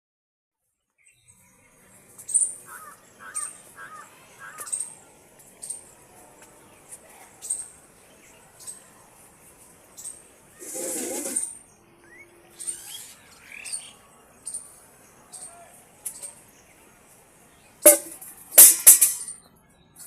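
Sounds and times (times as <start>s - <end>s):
sharp high bird chirp: 10.0s - 15.5s.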